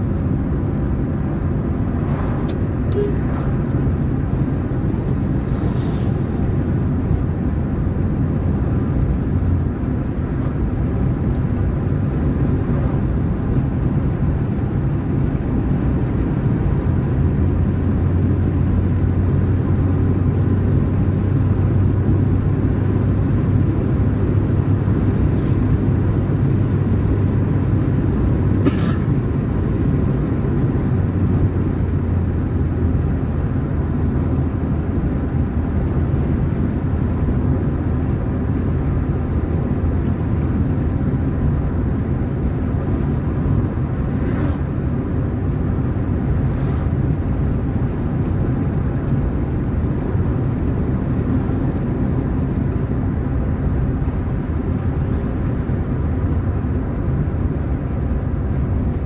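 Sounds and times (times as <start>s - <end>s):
car engine hum: 0.0s - 59.0s
road rumble: 0.0s - 59.0s.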